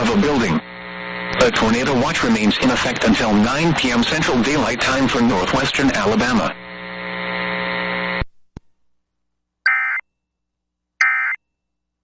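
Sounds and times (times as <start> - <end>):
buzzing hum: 5.2 - 8.3.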